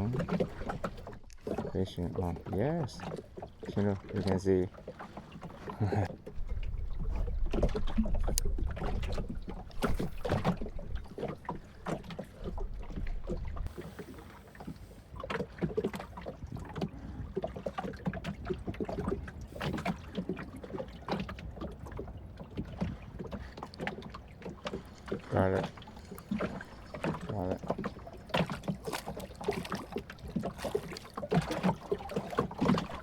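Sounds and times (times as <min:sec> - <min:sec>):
knocks and taps on boat: 0:00.0 - 0:33.0
water splashes: 0:00.0 - 0:33.0
wind rumbling on microphone: 0:06.3 - 0:13.7.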